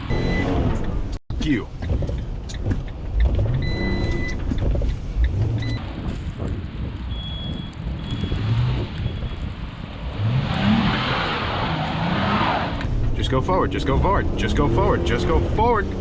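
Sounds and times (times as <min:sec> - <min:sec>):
short electronic beeps: 0:00.1 - 0:00.6, 0:03.6 - 0:04.4, 0:07.1 - 0:09.4
van engine revving: 0:10.0 - 0:12.9.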